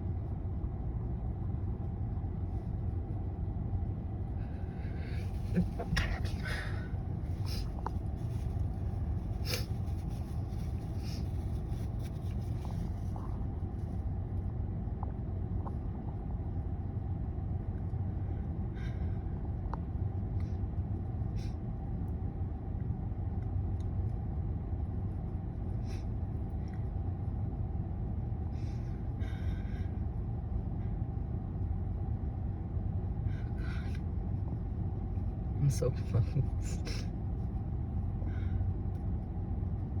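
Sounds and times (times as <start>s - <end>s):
low rumble: 0.0s - 40.0s
person sniffing and breathing: 4.4s - 13.2s.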